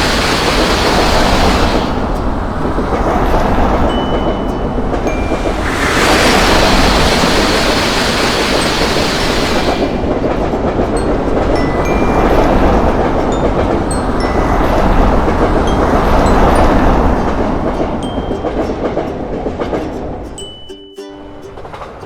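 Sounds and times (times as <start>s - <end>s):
loud hiss: 0.0s - 2.8s, 3.8s - 10.3s
train wheels rumbling on track: 0.0s - 20.6s, 21.4s - 22.0s.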